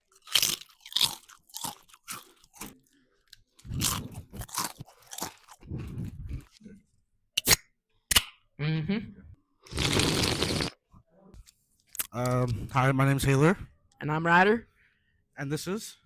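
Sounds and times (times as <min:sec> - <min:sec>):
crunchy food being chewed: 0:00.0 - 0:06.6.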